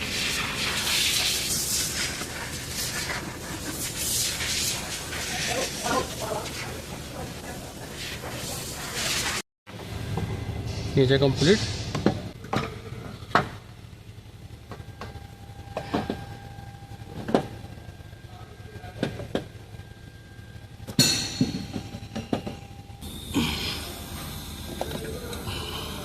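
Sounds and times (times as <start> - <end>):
faint steady whine: 9.7 - 26.0.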